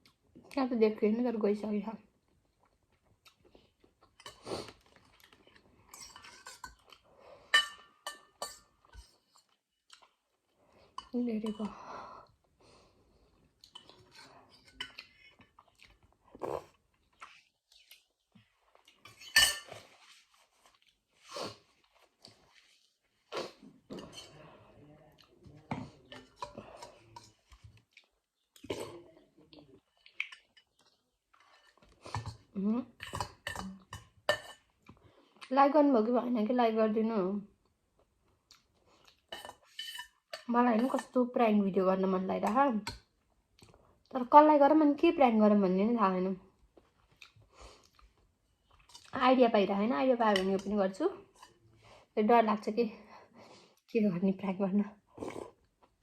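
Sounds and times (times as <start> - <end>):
soft chewing: 2.1 - 35.5, 37.6 - 41.2, 42.8 - 44.1, 46.6 - 49.2
metal utensil clinking bowl: 7.5 - 9.1, 19.1 - 19.8, 39.3 - 41.2.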